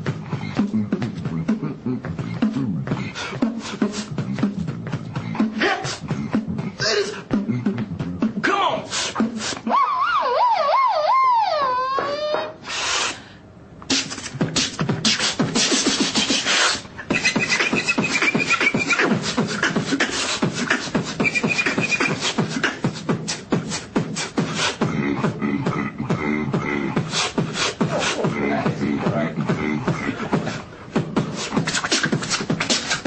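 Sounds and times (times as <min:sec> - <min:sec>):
man beatboxing: 0:00.0 - 0:10.0, 0:13.9 - 0:33.0
high whistled tone: 0:17.1 - 0:19.1, 0:21.2 - 0:22.3.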